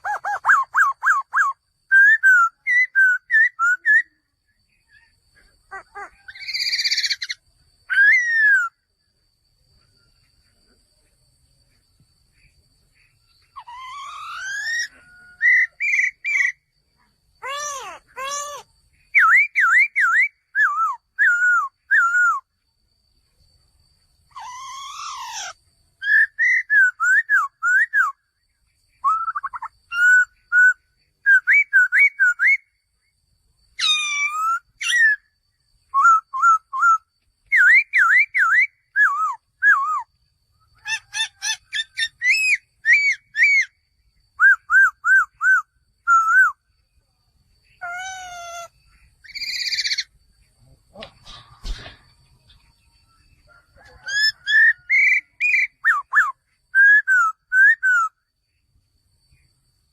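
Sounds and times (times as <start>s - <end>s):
bird singing whistled phrases: 0.0s - 4.2s, 6.2s - 8.8s, 13.4s - 16.7s, 17.4s - 22.5s, 24.4s - 28.2s, 29.0s - 32.8s, 33.8s - 35.3s, 35.9s - 40.2s, 40.9s - 43.8s, 44.4s - 46.7s, 47.8s - 50.1s, 54.0s - 58.2s
raspy bird call: 4.9s - 8.8s, 13.4s - 16.7s, 17.4s - 22.4s, 24.3s - 28.2s, 40.8s - 43.8s, 47.8s - 50.1s, 53.8s - 58.1s.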